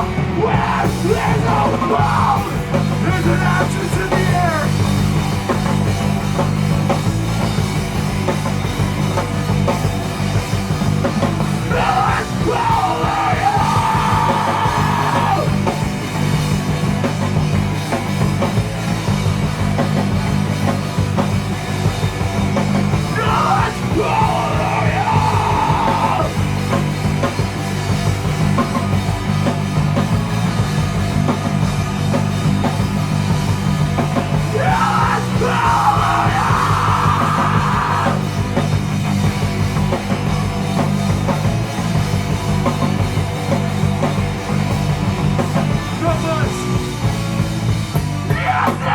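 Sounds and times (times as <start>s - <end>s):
shouted vocals: 0.0s - 4.7s, 11.6s - 15.7s, 23.0s - 26.4s, 34.4s - 38.3s, 48.2s - 48.9s
punk band playing: 0.0s - 48.9s.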